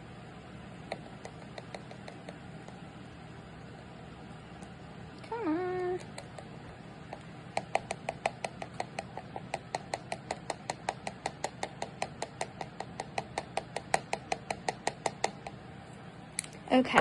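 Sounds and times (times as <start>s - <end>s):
tapping plastic glitter container: 0.9s - 2.8s, 7.1s - 15.6s.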